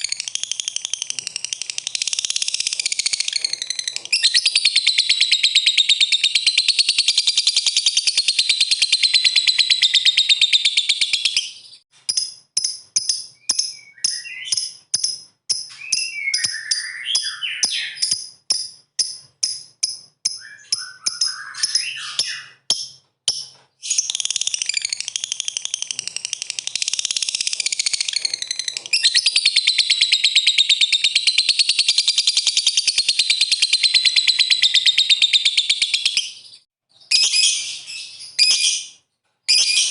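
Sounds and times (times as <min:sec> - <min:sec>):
lovebird chattering trill: 0:00.0 - 0:22.9, 0:23.9 - 0:36.4
sharp bird chirps: 0:00.0 - 0:39.9.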